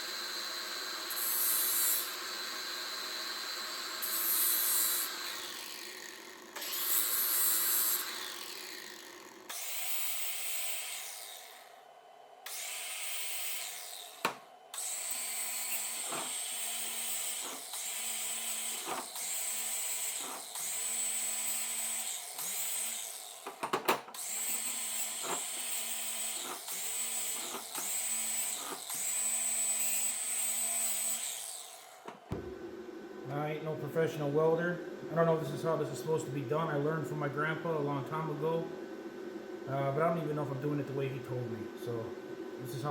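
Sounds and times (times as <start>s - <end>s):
power tool whining: 0.0s - 33.4s.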